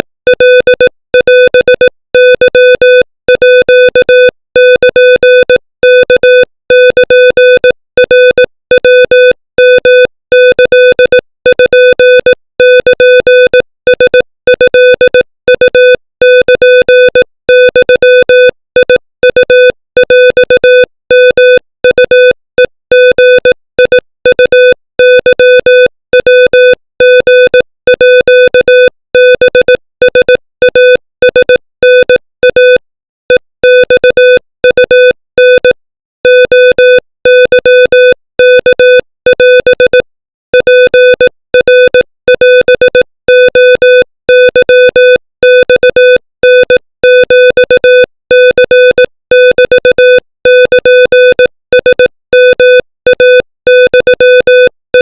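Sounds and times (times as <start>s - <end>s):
morse code beeps: 0.3s - 55.0s.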